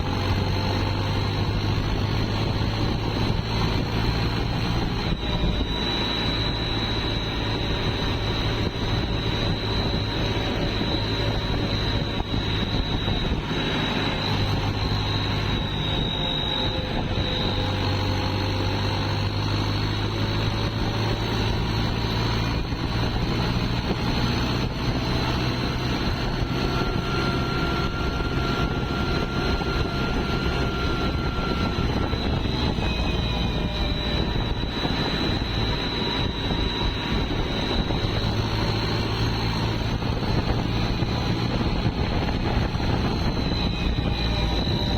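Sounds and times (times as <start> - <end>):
high turbo whistle: 0.0 - 44.9
tractor diesel engine running: 0.0 - 44.9.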